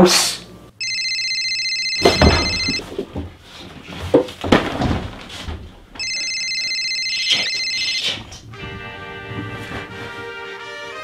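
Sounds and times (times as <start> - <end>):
phone ringing electronic trill: 0.8 - 2.8, 6.0 - 8.2
dull knocks and rustles: 2.0 - 6.4, 8.2 - 10.4.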